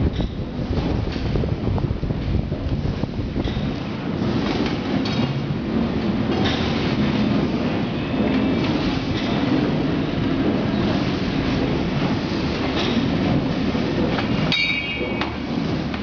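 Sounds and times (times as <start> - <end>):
metallic clanks: 14.1 - 15.4.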